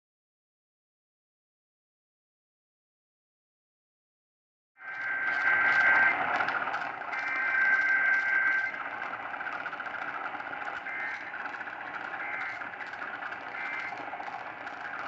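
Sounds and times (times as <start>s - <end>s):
two-tone digital warble: 4.8s - 8.9s, 10.6s - 15.0s
radio static: 4.8s - 15.0s.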